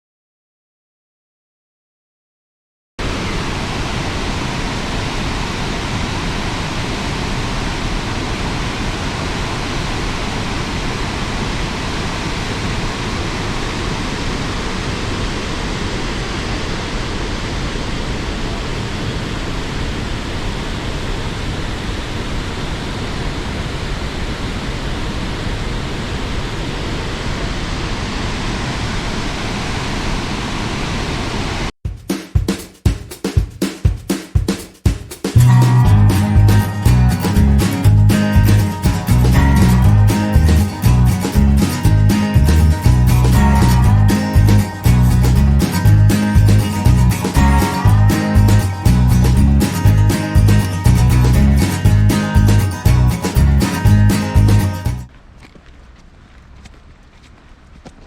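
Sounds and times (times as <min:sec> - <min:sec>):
waterfall rushing: 0:03.0 - 0:26.1, 0:35.4 - 0:55.0.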